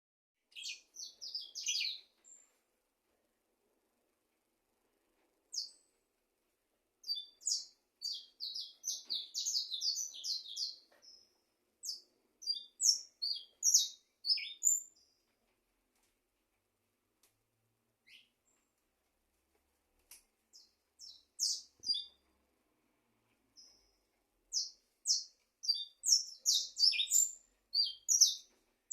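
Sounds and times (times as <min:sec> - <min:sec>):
songbird chirping: 0:00.4 - 0:02.6, 0:05.4 - 0:06.2, 0:07.0 - 0:15.6, 0:18.0 - 0:19.0, 0:20.1 - 0:28.9.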